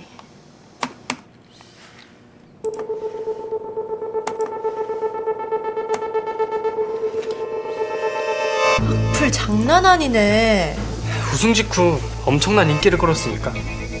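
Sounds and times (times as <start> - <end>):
fluttering electronic tone: 2.9 - 9.5.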